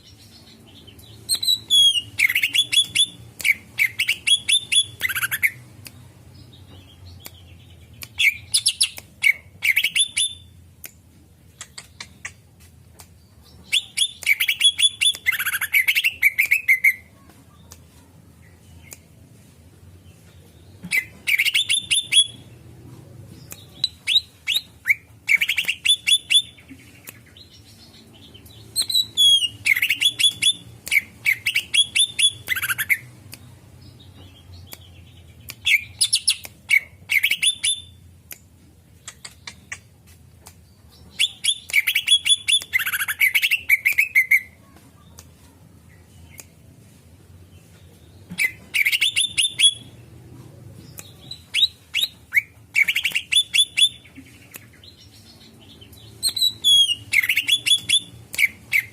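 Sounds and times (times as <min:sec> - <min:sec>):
bird chirps and whistled phrases: 0:00.1 - 0:05.6, 0:06.5 - 0:10.6, 0:13.5 - 0:17.1, 0:20.8 - 0:22.5, 0:23.5 - 0:33.1, 0:33.9 - 0:38.0, 0:40.8 - 0:44.6, 0:48.3 - 0:50.0, 0:50.9 - 0:58.9.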